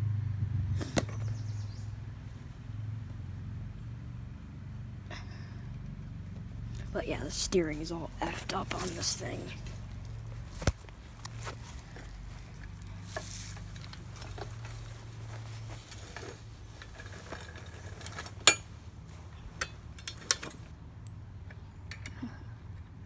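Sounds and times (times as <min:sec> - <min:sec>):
metal bike parts rattling: 0:08.4 - 0:20.7.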